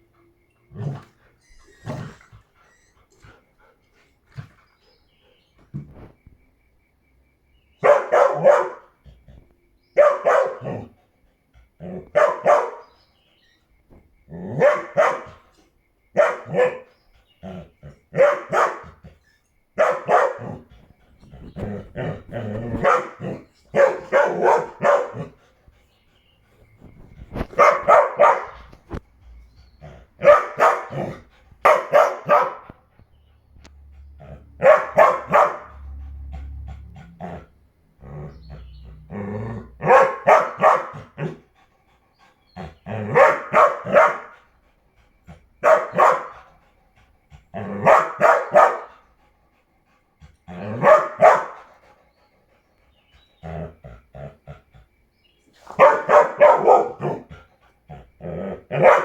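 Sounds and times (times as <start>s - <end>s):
dog barking: 7.8s - 8.9s, 10.0s - 10.9s, 11.9s - 13.0s, 14.5s - 15.4s, 16.2s - 16.9s, 18.1s - 19.0s, 19.8s - 20.6s, 22.6s - 25.4s, 27.3s - 29.0s, 30.2s - 32.8s, 34.4s - 35.9s, 39.8s - 41.4s, 42.9s - 44.4s, 45.6s - 46.5s, 47.6s - 49.0s, 50.5s - 51.7s, 55.6s - 57.3s, 58.6s - 59.0s.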